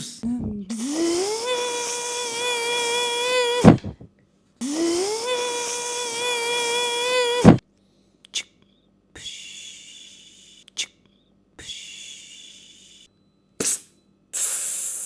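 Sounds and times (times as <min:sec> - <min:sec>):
person making mouth sound effect: 0:00.0 - 0:03.8, 0:04.6 - 0:07.6, 0:13.6 - 0:15.0.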